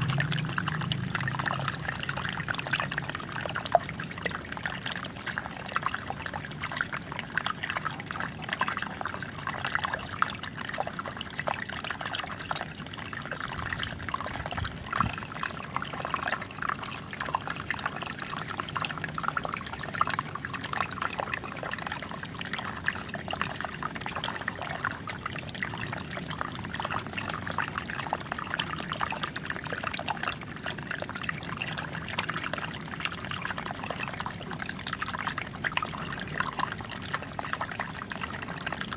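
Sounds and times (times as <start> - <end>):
water splashing into pool: 0.0 - 4.0.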